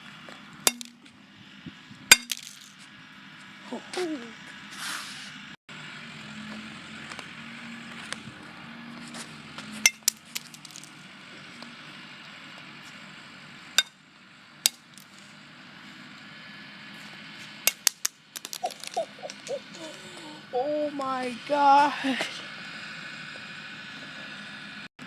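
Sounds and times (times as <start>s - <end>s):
bat striking a phone: 0.7s - 1.1s, 2.1s - 2.7s, 14.7s - 15.1s, 17.7s - 19.5s.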